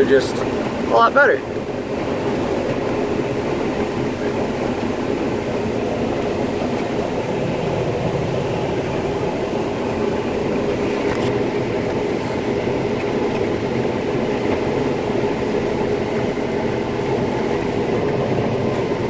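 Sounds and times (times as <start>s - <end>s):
combine harvester running: 0.0s - 19.0s.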